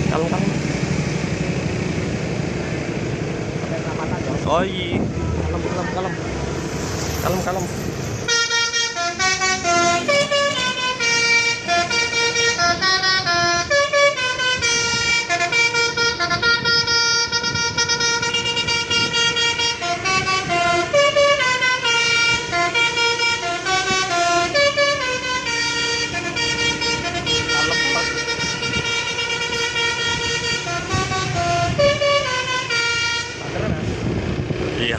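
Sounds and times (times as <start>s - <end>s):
musical air horn melody: 7.8s - 33.4s.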